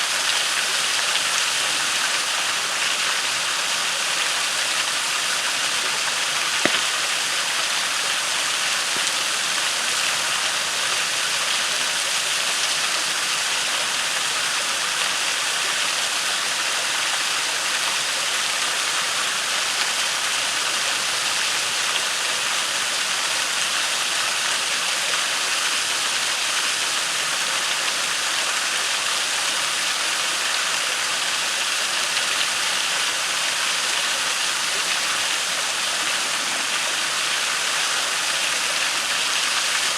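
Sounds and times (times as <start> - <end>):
waterfall and creek rushing: 0.0 - 39.9
campfire popping: 6.5 - 7.4.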